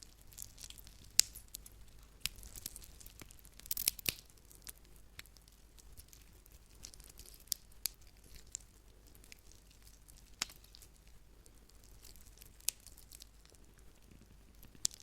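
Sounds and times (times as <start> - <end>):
bone cracking: 0.4 - 5.4, 10.2 - 10.9.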